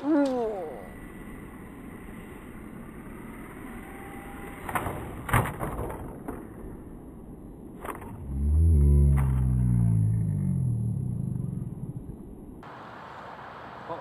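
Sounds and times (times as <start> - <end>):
faint high whine: 0.0 - 5.3
wind rumbling on microphone: 7.3 - 12.6.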